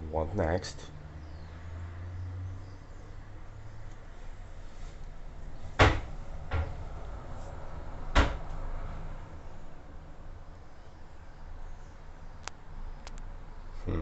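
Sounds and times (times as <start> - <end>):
sharp knocks: 5.8 - 6.8, 8.1 - 8.5.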